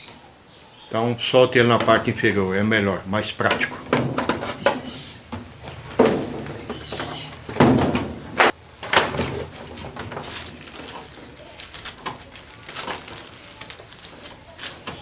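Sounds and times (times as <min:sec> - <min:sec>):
plastic and metal parts knocking: 0:01.5 - 0:15.0
light clicks and rattles: 0:03.4 - 0:15.0.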